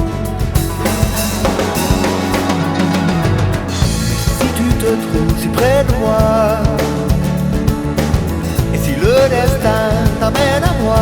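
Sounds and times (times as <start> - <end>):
song with drum kit: 0.0 - 11.0.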